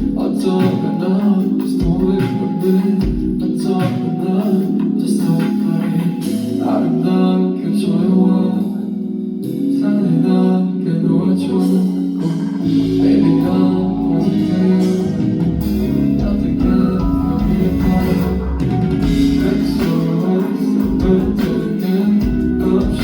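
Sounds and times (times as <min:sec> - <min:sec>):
live pop band: 0:00.0 - 0:23.0
person singing: 0:00.0 - 0:23.0
bass guitar: 0:11.1 - 0:23.0.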